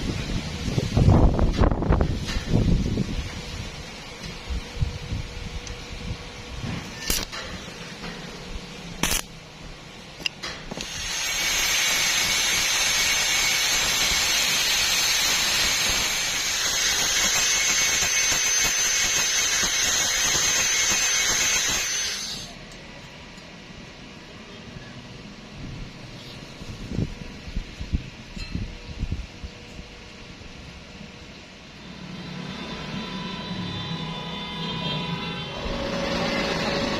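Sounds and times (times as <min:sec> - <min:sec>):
welding arc hissing: 0:06.8 - 0:09.5, 0:10.6 - 0:22.6.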